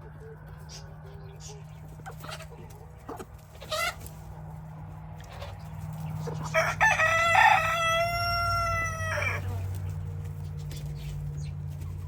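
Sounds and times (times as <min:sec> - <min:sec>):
chickens clucking: 0:00.0 - 0:12.0
rooster crowing: 0:06.4 - 0:09.6.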